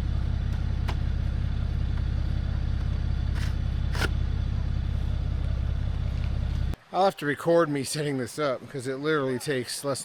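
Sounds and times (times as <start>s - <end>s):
diesel engine idling: 0.0s - 6.8s.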